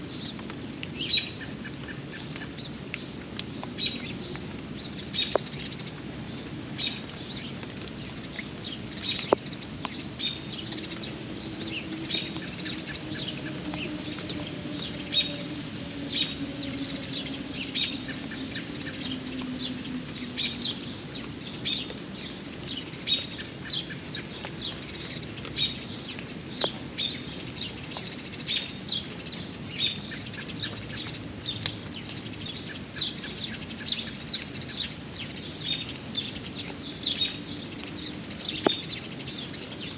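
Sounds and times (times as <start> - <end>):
steady rain: 0.0 - 39.9
bird chirping: 3.8 - 26.2
drip-like clicks: 7.0 - 13.0.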